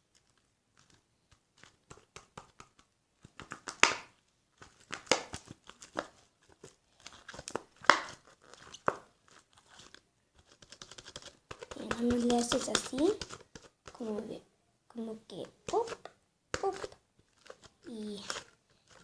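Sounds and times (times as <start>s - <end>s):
slime squishing and popping: 1.9s - 6.2s, 7.1s - 9.1s.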